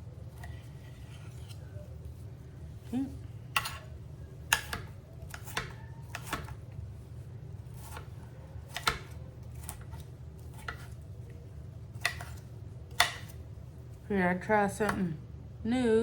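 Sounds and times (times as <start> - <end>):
knife chopping on cutting board: 3.5 - 3.9, 4.5 - 6.6, 7.6 - 11.0, 11.9 - 13.4.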